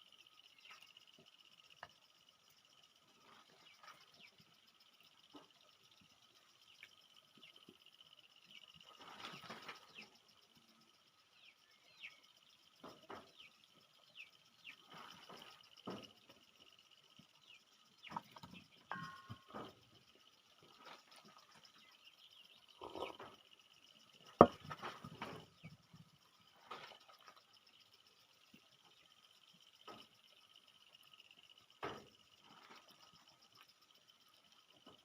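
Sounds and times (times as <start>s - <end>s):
steady insect-like hum: 0.0s - 35.0s
bird chirping: 3.2s - 30.4s.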